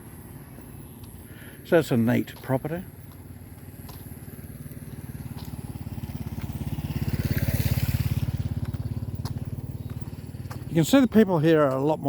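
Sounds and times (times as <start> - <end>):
vehicle engine passing by: 2.8 - 11.6.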